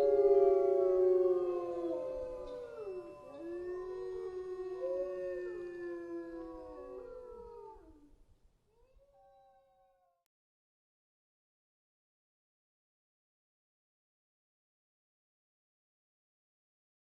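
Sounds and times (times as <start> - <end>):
wolves howling: 0.0 - 8.0.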